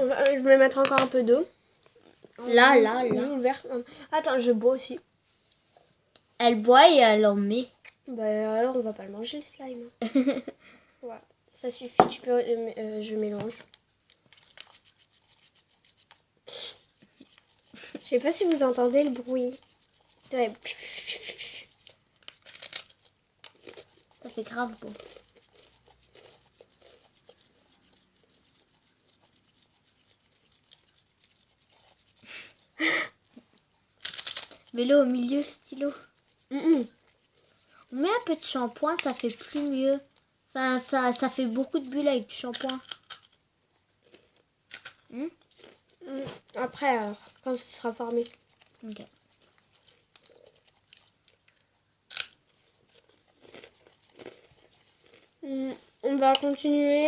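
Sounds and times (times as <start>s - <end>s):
slime being stirred in plastic tub: 14.2s - 20.8s, 23.5s - 32.9s, 34.7s - 42.8s, 45.4s - 51.2s
slime crackling and squelching: 17.0s - 20.7s, 21.4s - 32.7s.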